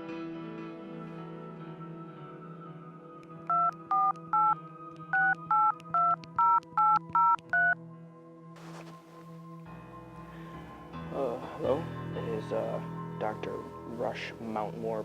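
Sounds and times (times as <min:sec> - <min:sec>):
soft background music: 0:00.0 - 0:15.0
telephone keypad tones: 0:03.5 - 0:04.6, 0:05.2 - 0:07.8.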